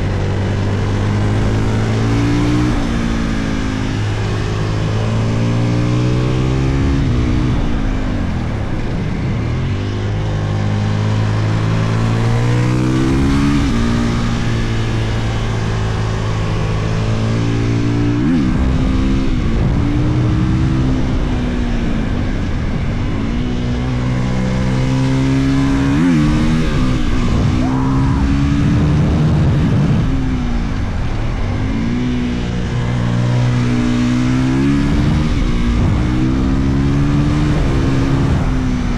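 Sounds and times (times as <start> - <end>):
motorcycle engine revving: 0.0 - 38.9
steady rushing noise: 21.6 - 33.8.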